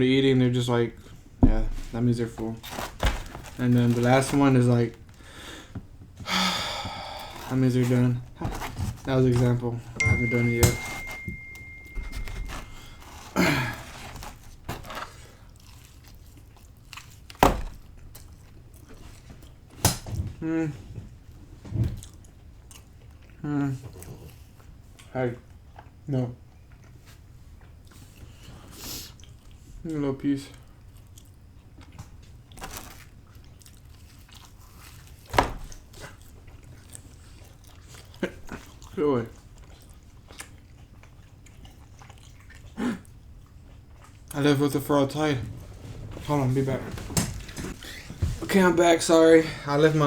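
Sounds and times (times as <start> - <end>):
person chewing pizza: 12.5 - 19.8, 20.5 - 29.8, 30.4 - 44.6.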